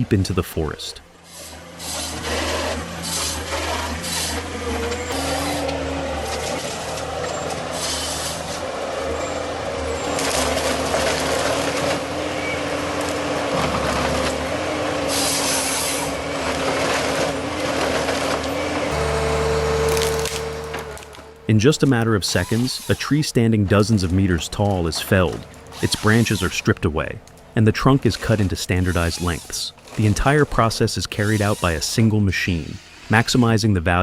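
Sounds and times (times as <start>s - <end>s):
forestry machine humming: 0.0s - 23.0s
machine cutting a tree: 1.2s - 23.2s, 25.5s - 26.9s, 27.8s - 32.2s.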